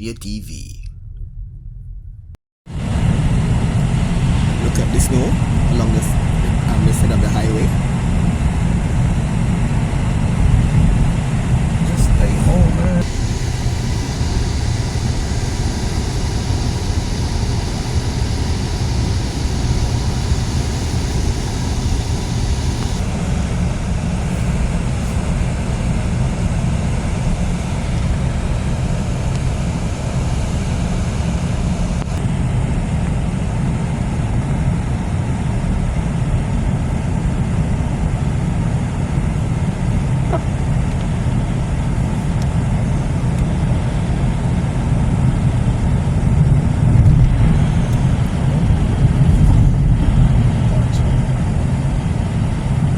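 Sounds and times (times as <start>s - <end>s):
tyres and engine rumble: 2.7s - 32.3s
high road hiss: 2.8s - 32.2s.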